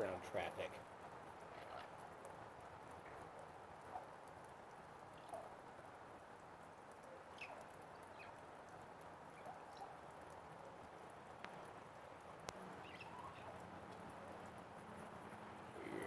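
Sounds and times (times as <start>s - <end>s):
distant traffic hiss: 0.0s - 16.0s.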